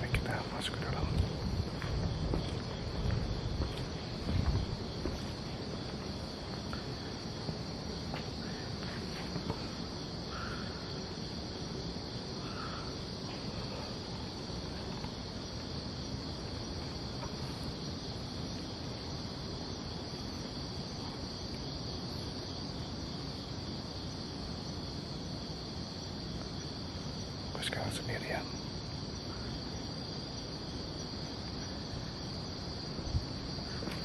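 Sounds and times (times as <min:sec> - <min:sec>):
low background noise: 0:00.0 - 0:34.0
night insects trilling: 0:00.0 - 0:34.0.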